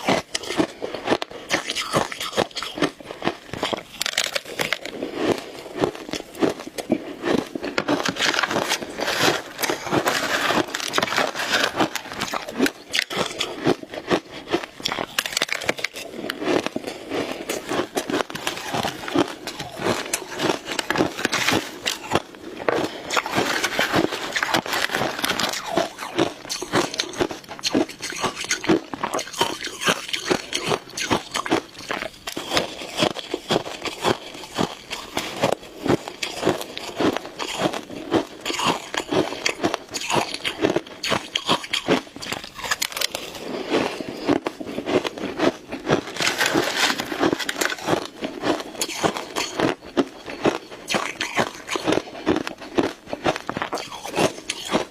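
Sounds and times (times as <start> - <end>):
ice crunching while chewed: 0.0 - 54.9.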